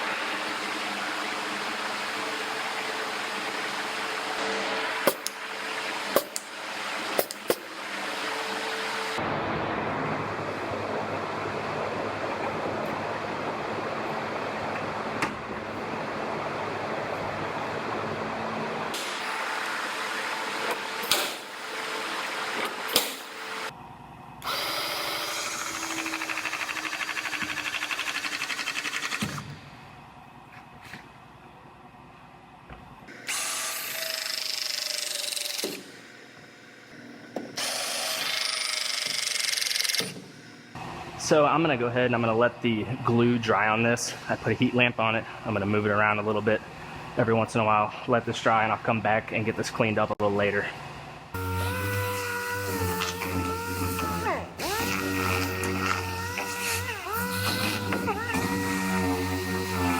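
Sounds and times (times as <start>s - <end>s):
handheld power tools running: 24.4s - 29.4s, 51.4s - 59.9s.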